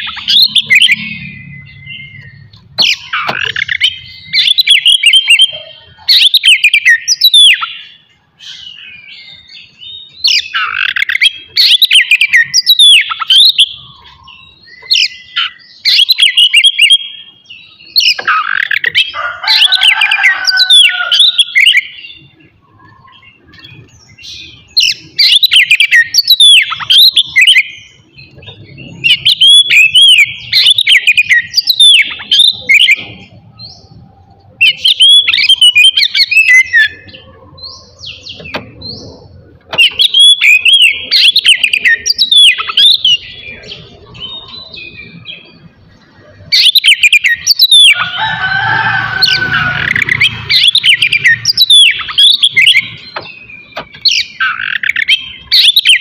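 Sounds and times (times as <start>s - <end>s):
bird singing whistled phrases: 25.2s - 27.7s, 39.8s - 43.2s.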